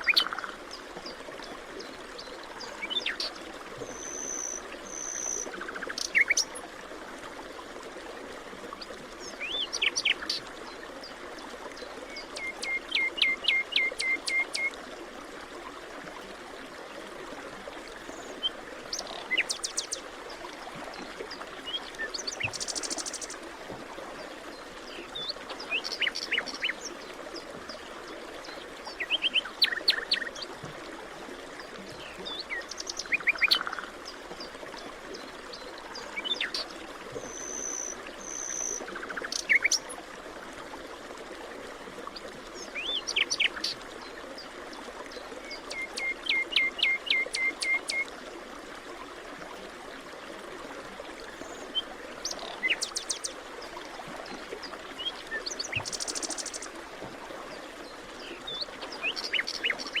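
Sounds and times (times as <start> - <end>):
forest birds chirping: 32.0 - 34.5, 51.4 - 53.4, 57.8 - 60.0.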